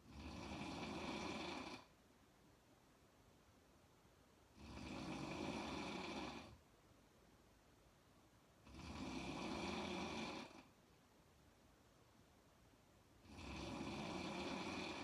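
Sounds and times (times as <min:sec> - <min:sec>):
woman snoring: 0:00.0 - 0:01.9, 0:04.6 - 0:06.6, 0:08.6 - 0:10.7, 0:13.2 - 0:15.0
quiet breathing: 0:00.0 - 0:02.0, 0:04.4 - 0:06.7, 0:08.6 - 0:10.8, 0:13.1 - 0:15.0.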